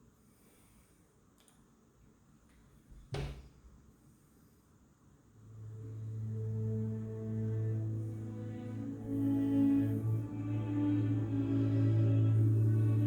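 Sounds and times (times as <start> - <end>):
low backing music tone: 5.5 - 13.0.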